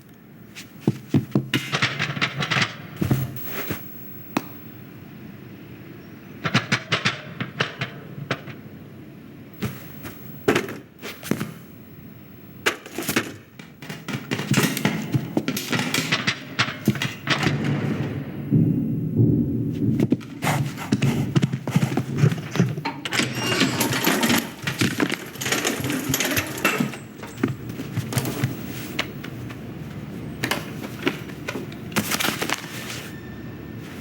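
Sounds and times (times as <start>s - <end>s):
knocks thuds clicks and rattles: 12.6s - 32.7s
low rumble: 18.0s - 20.2s.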